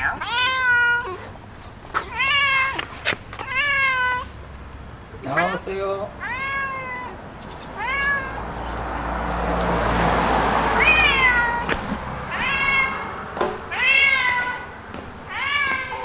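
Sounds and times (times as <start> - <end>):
cat meowing: 0.0 - 4.3, 5.2 - 8.8, 10.7 - 16.0
rushing noise with low rumble: 7.2 - 13.9.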